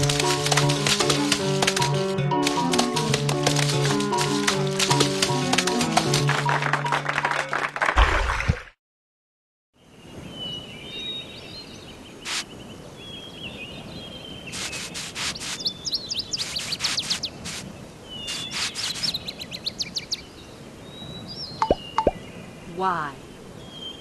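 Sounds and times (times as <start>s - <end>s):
birds chirping: 9.8s - 24.0s.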